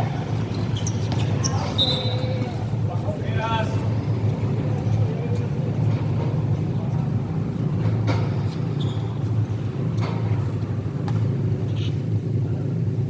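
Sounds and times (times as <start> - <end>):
shoes squeaking: 0.1 - 2.6, 8.5 - 9.5.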